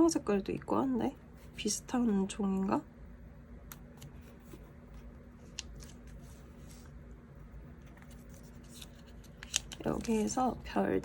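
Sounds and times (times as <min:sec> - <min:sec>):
low steady hum: 0:00.0 - 0:11.0
paper clicks and rustles: 0:05.4 - 0:06.9, 0:07.8 - 0:10.5.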